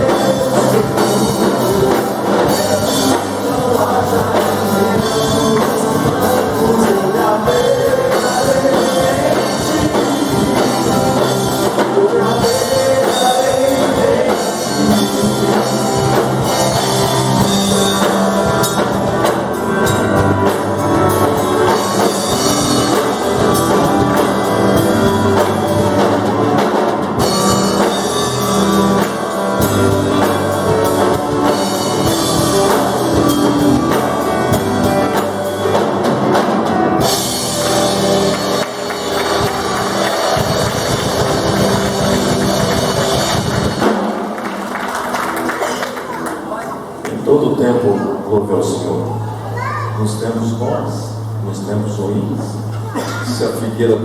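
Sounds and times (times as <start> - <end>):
voices singing: 0.0 - 17.6
rock band playing: 0.0 - 47.0.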